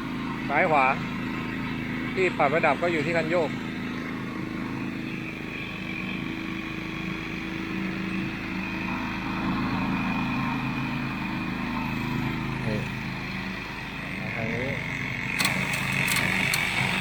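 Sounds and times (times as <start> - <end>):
ride-on lawn mower engine: 0.0 - 17.0.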